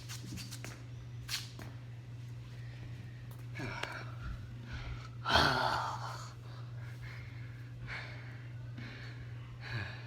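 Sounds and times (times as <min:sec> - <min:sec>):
man breathing hard: 0:03.6 - 0:10.0.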